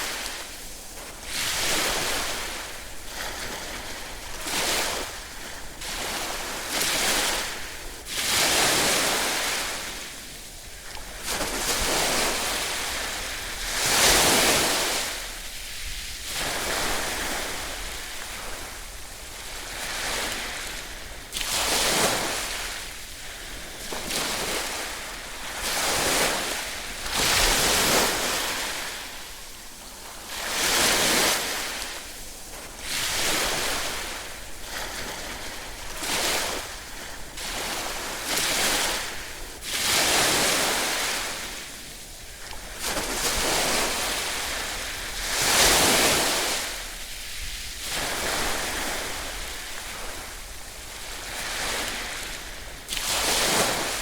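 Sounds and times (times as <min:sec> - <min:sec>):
ocean waves breaking on shore: 0:00.0 - 0:54.0.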